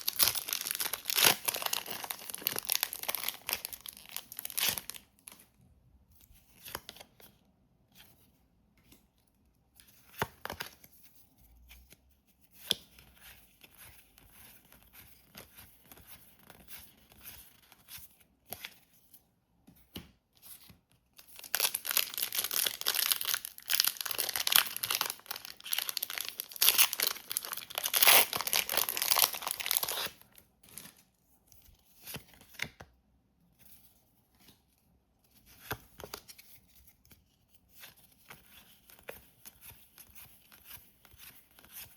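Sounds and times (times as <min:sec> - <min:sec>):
packaging rustling and crinkling: 0:00.0 - 0:05.0, 0:21.4 - 0:31.0
wrapper crinkling and tearing: 0:00.0 - 0:05.0, 0:21.4 - 0:31.0.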